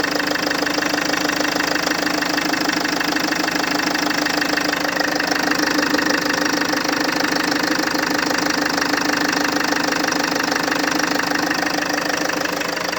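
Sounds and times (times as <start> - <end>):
engine idling with knocking: 0.0 - 12.9.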